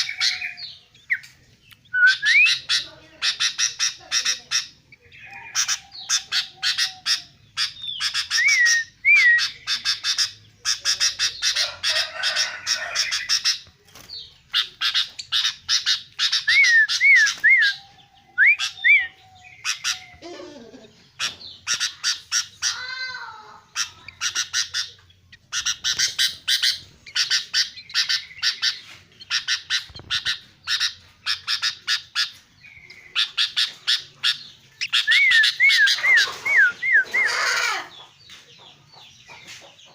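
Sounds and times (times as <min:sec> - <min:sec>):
bulbul harsh chatter: 0:00.0 - 0:39.9
bird whistled phrases: 0:01.8 - 0:11.5, 0:14.6 - 0:20.2, 0:25.6 - 0:37.8.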